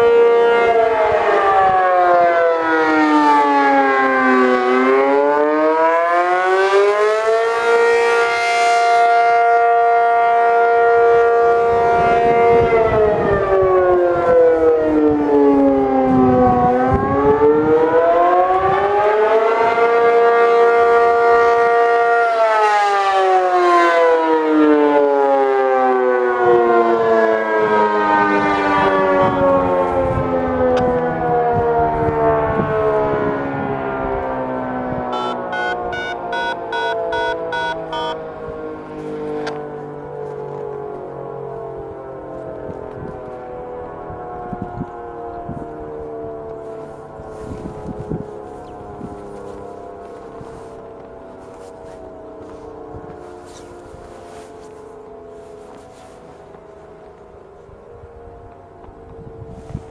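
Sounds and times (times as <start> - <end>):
warning siren winding: 35.2 - 38.2.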